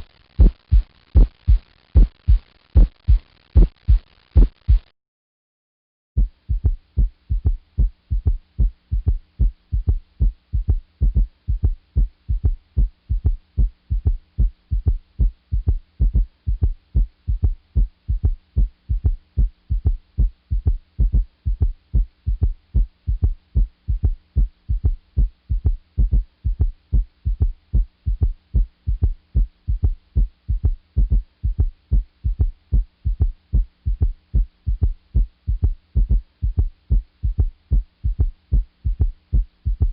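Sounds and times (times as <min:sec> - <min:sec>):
faint steady hum: 0:00.0 - 0:04.9, 0:06.2 - 0:39.9
heartbeat through stethoscope: 0:00.0 - 0:04.9, 0:06.2 - 0:39.9.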